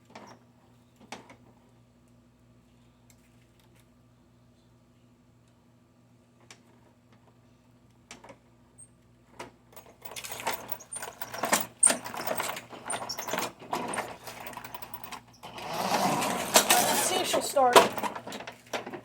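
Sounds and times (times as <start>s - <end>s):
clicks and rustling handling: 9.8s - 19.0s.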